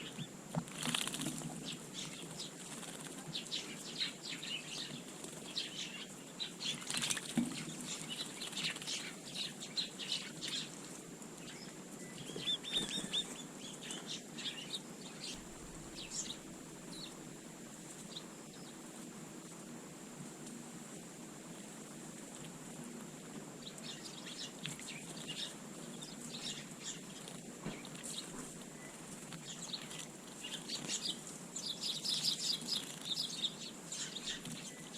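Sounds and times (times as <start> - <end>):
small birds chirping: 0.0 - 34.9
wing flutters: 0.7 - 3.5, 15.3 - 18.2.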